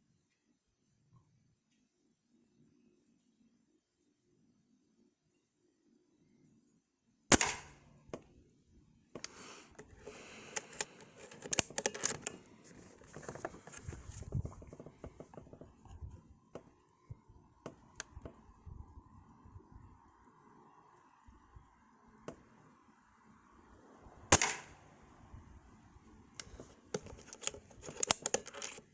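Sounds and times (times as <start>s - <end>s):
air rifle shot: 7.3s - 7.9s, 24.3s - 24.8s
rifle handling clicks: 9.2s - 13.9s, 26.4s - 28.9s.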